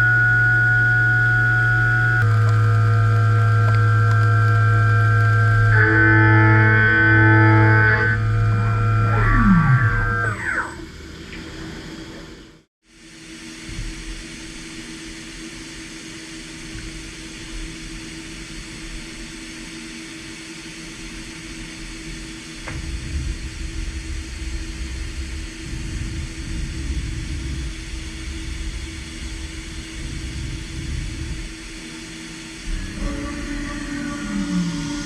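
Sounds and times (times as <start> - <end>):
low rumble: 0.0 - 12.3, 22.7 - 31.9, 32.5 - 35.0
milling machine hum: 0.0 - 35.0.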